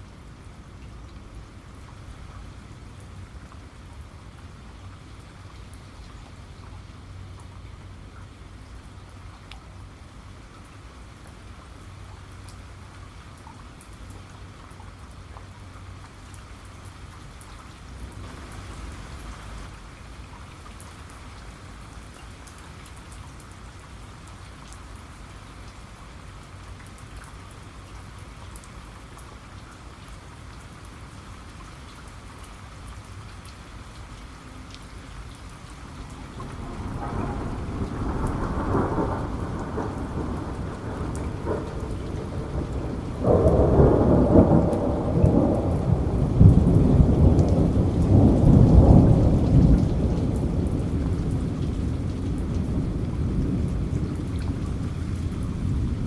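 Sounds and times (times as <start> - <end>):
steady rain: 0.0 - 56.0
thunder rumble: 36.1 - 56.0.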